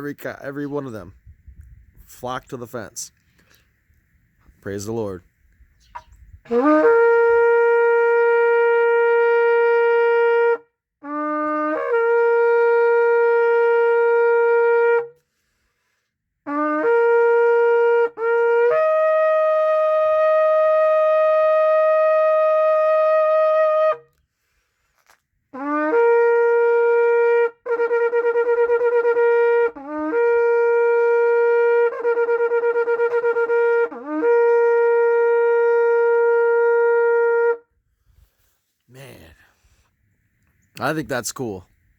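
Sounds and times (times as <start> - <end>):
ram's horn blasts: 6.5 - 15.2, 25.5 - 37.6.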